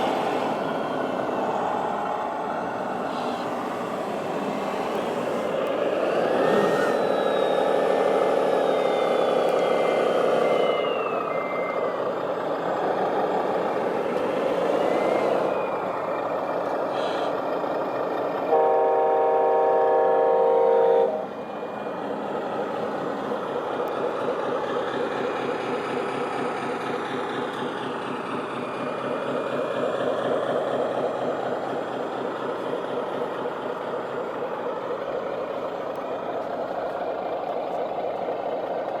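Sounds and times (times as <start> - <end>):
horn-like tone: 18.5 - 21.3.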